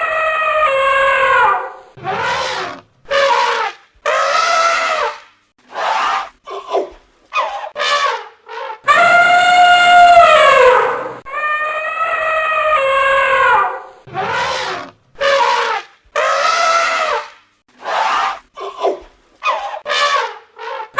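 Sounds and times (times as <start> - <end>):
elephant trumpeting: 0.0 - 5.1, 7.4 - 17.2.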